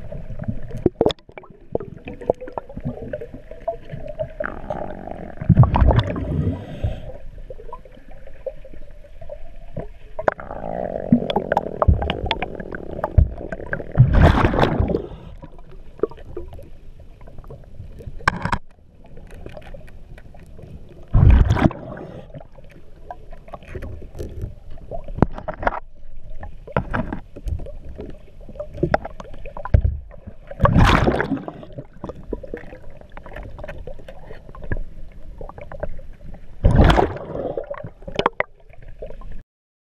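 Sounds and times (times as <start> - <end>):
scuba exhaled bubbles rushing: 0.0 - 18.3, 20.5 - 25.4, 27.5 - 39.4
low underwater rumble: 0.0 - 39.4
clicks and knocks: 18.2 - 18.8.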